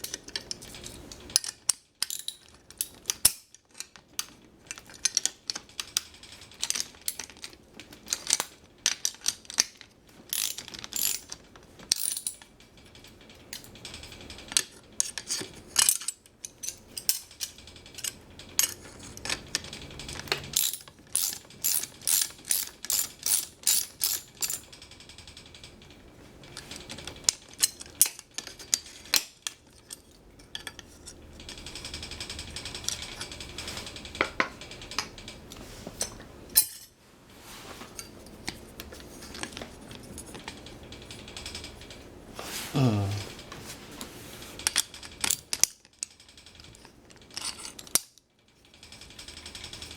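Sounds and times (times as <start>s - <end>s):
ratchet wrench clicking: 20.6s - 25.1s.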